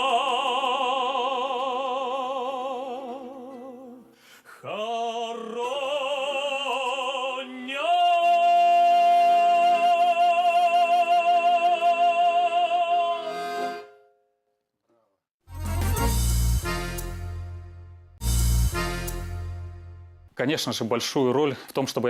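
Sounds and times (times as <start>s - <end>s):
man singing folk song: 0.0s - 13.5s
accordion chords: 13.0s - 14.2s, 15.4s - 20.4s.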